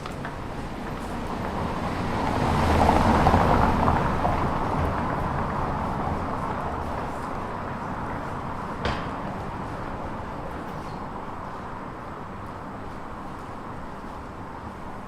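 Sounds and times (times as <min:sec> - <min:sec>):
background traffic noise: 0:00.0 - 0:15.0.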